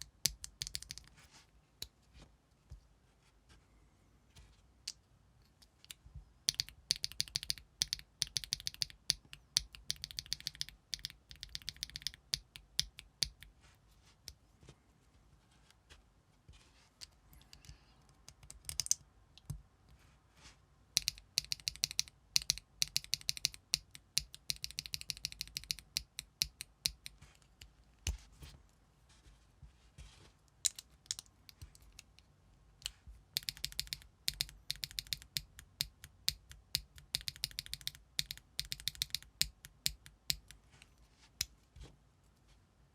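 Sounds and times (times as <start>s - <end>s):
mechanical keyboard typing clacks: 6.5s - 13.4s, 21.0s - 26.6s, 33.4s - 40.5s.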